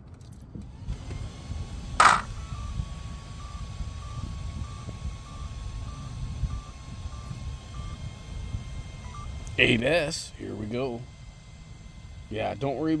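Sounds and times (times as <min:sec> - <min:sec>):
loud electronic beep: 0:03.4 - 0:08.0, 0:09.0 - 0:09.8
faint steady tone with pips: 0:03.4 - 0:13.0.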